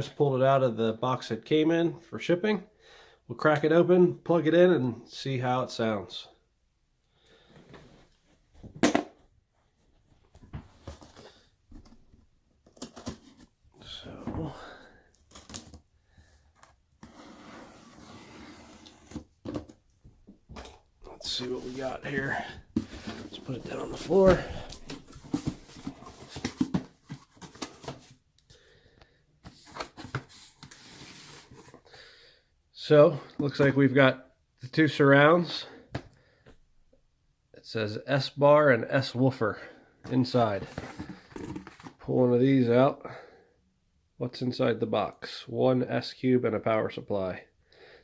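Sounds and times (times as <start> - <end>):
cardboard rustling: 10.4 - 14.6, 20.6 - 28.2, 29.4 - 31.8, 40.2 - 42.0
packaging rustling: 21.1 - 28.2.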